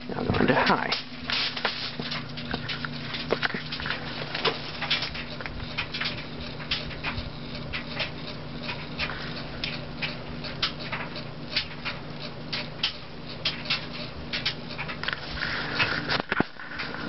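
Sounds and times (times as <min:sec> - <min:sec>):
ceiling fan motor buzzing hum: 0:00.0 - 0:17.0
sharp clicks and ticks: 0:02.1 - 0:15.2.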